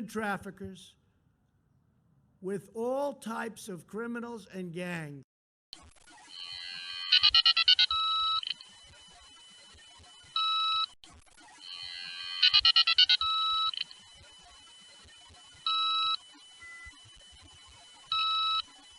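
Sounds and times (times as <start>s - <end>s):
electronic alert beeps: 6.9s - 8.6s, 11.8s - 14.0s, 15.7s - 17.0s.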